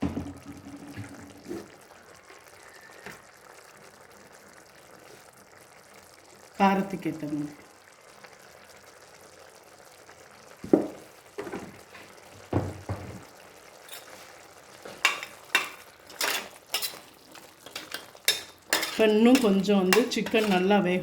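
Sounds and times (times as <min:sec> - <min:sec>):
faint sizzle: 0:00.0 - 0:21.0
spoon clinking against pot: 0:13.9 - 0:14.2, 0:15.0 - 0:20.7
spoon knocking in a pot: 0:14.9 - 0:20.7.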